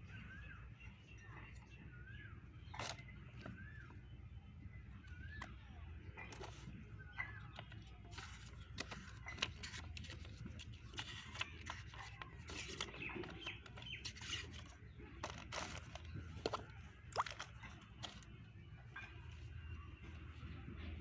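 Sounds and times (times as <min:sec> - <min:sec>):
faint bird-like chirps: 0:00.0 - 0:09.4.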